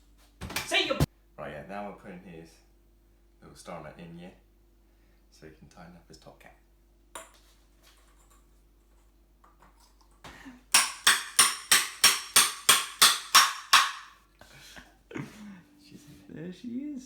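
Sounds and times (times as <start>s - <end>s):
hammer striking metal tool: 10.7s - 14.2s.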